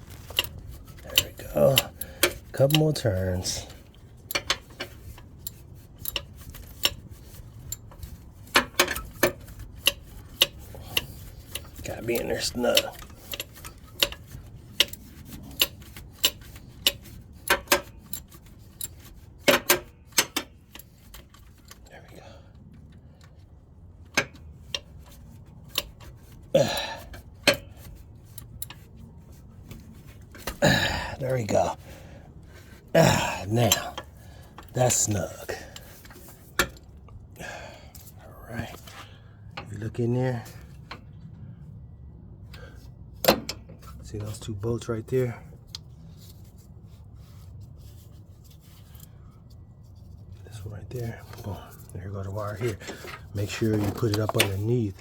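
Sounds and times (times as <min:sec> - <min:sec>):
throaty vocal sound: 0:26.6 - 0:27.1, 0:30.6 - 0:31.3, 0:32.9 - 0:34.0.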